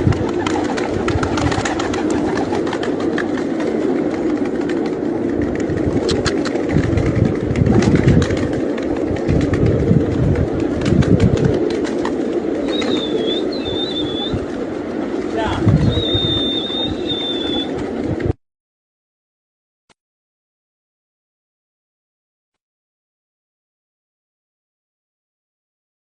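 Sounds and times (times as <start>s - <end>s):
pigeons cooing: 0.0s - 18.3s
high wavering whistle: 12.7s - 14.4s, 15.8s - 17.7s.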